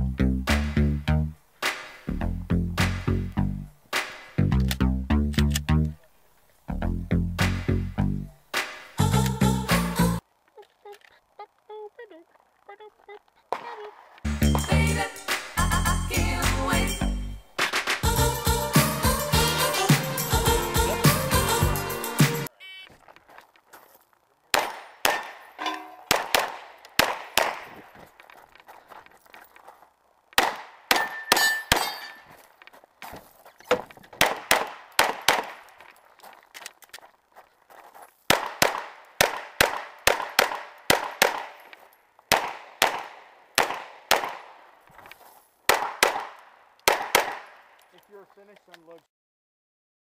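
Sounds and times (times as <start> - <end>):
pistol shots: 24.5 - 25.5, 26.1 - 27.9, 30.4 - 31.9, 34.2 - 35.7, 38.3 - 41.7, 42.3 - 44.6, 45.7 - 47.8.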